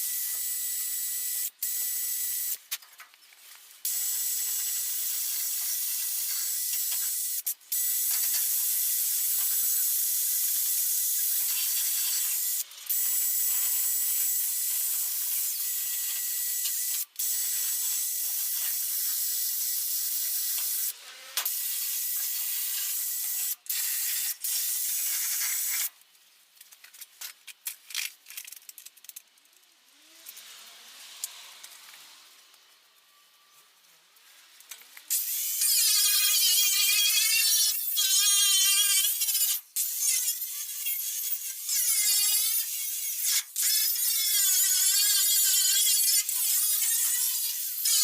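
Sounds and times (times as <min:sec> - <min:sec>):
angle grinder grinding metal: 0:08.1 - 0:25.9.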